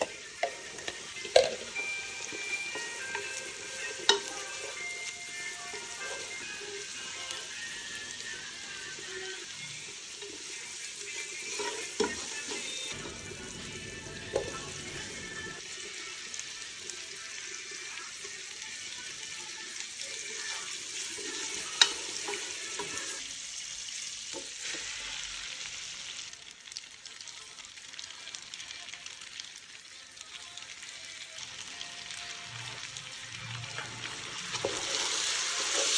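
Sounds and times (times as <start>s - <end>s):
utensil clicking against pan: 0.0s - 6.5s, 21.6s - 23.1s
food sizzling in hot oil: 0.0s - 35.9s.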